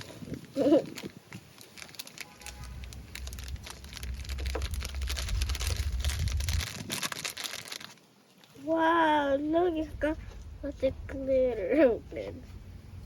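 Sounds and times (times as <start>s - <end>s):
low rumble of handling: 0.0s - 7.9s
plastic packaging crinkling: 0.0s - 8.6s.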